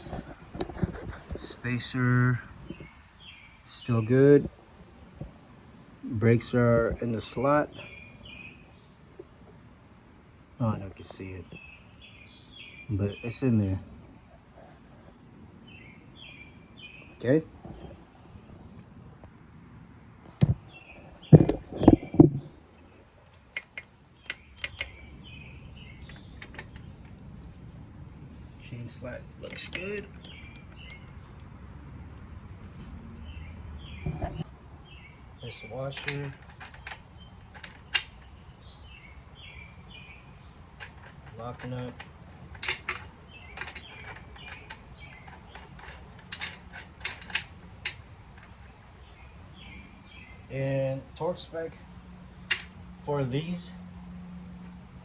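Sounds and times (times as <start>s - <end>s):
bird chirps: 20.6s - 27.0s, 28.3s - 31.4s, 33.2s - 40.6s
sharp metal clicks: 21.3s - 27.2s, 29.4s - 31.5s, 35.9s - 38.4s, 40.8s - 48.7s
tools and metal parts knocking: 23.3s - 25.1s, 35.9s - 38.3s, 40.8s - 48.6s
socket ratchet clicking: 23.4s - 25.0s.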